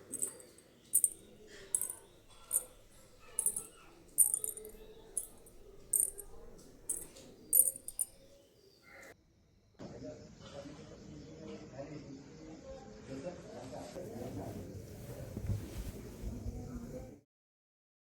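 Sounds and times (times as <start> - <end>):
ankle bells jingling: 0.0 - 8.3.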